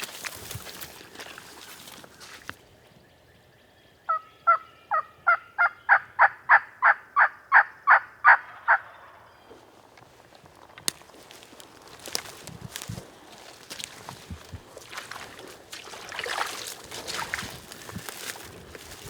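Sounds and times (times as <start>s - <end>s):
turkey yelps: 4.1s - 9.2s.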